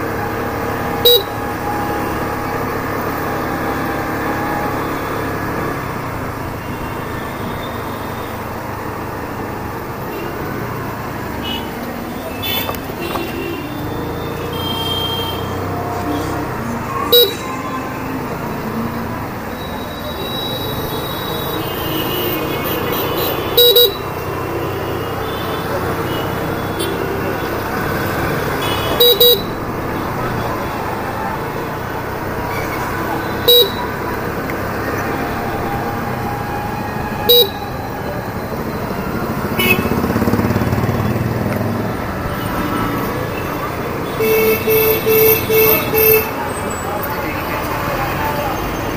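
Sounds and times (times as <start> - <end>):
street traffic: 0.0 - 48.9
vehicle horn toot: 0.9 - 1.4, 12.3 - 15.6, 17.1 - 17.5, 19.6 - 24.2, 28.4 - 29.6, 33.3 - 34.0, 37.2 - 37.7, 39.5 - 40.1, 44.0 - 46.4
scooter engine running: 37.8 - 44.3.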